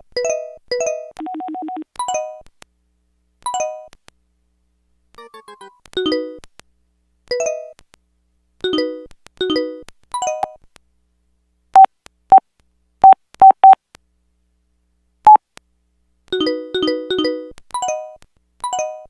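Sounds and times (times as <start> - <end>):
single-pitch beeps: 13.0 - 13.8
phone ringtone melody: 16.4 - 17.5.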